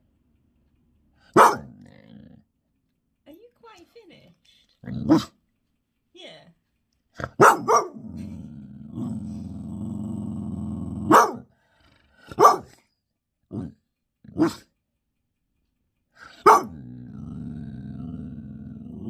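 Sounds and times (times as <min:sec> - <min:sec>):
dog barking sharply: 0:01.3 - 0:01.8, 0:07.2 - 0:08.0, 0:11.1 - 0:11.5, 0:12.3 - 0:12.8, 0:14.4 - 0:14.6, 0:16.4 - 0:16.8
dog growling: 0:01.3 - 0:02.5, 0:04.8 - 0:05.4, 0:07.2 - 0:12.7, 0:13.5 - 0:14.7, 0:16.2 - 0:19.0.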